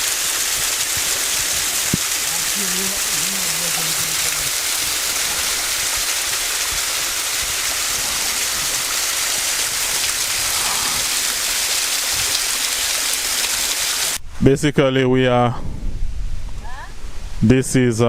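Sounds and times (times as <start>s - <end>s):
water hissing: 0.0s - 14.2s.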